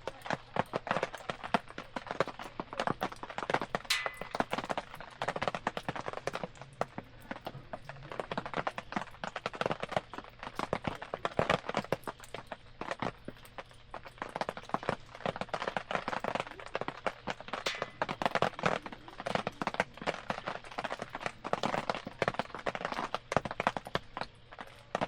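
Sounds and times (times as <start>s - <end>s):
wood campfire crackling: 0.0s - 25.0s.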